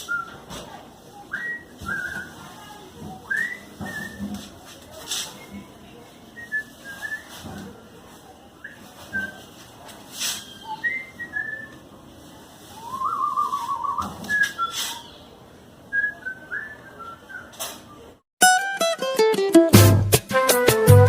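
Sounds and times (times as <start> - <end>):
high whistled chirps: 12.8 - 15.2
music: 18.4 - 21.0.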